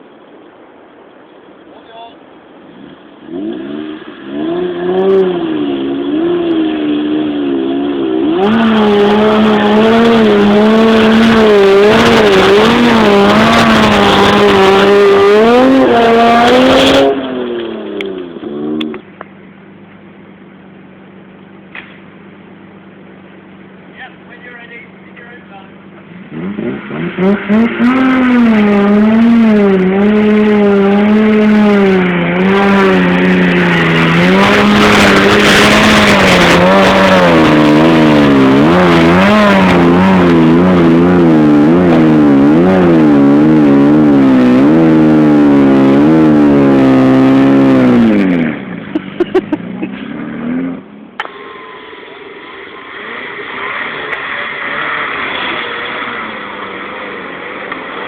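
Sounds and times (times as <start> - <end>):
engine throttle blips: 2.4 - 58.0
car engine revving hard: 3.2 - 19.0, 25.8 - 51.0, 52.7 - 58.0.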